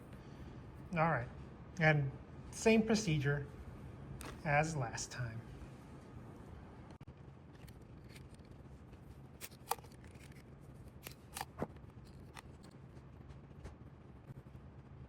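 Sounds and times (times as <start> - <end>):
small tools clicking and snipping: 9.4 - 12.7.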